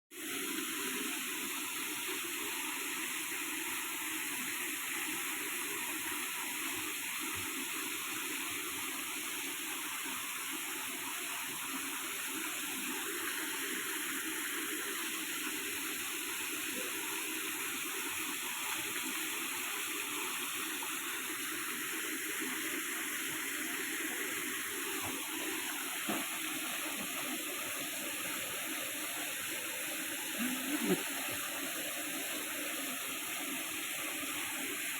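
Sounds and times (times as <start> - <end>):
waterfall rushing: 24.6 - 34.9.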